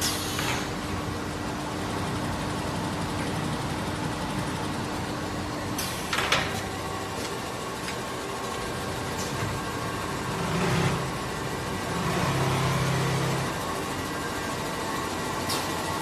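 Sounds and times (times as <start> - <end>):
sewing machinery running: 10.2 - 13.6.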